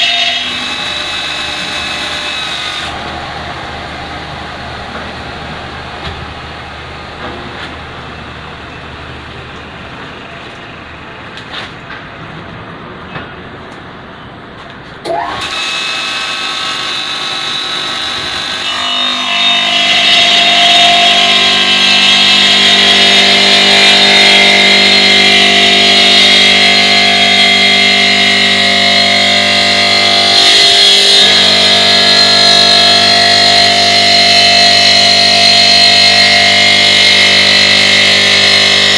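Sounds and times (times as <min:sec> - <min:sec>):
machine motor whine: 0:00.0 - 0:11.0, 0:15.1 - 0:38.9
quiet machine noise: 0:00.1 - 0:15.6.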